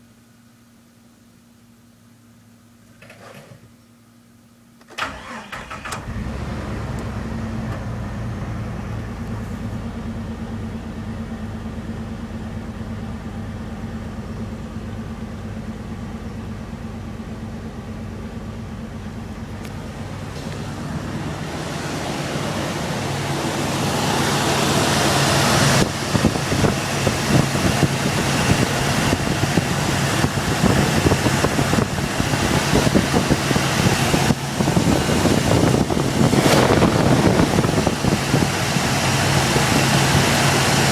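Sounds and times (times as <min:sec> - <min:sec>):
car engine misfiring: 0:04.9 - 0:13.4, 0:14.1 - 0:40.9
rushing noise: 0:19.9 - 0:28.4, 0:34.7 - 0:40.2.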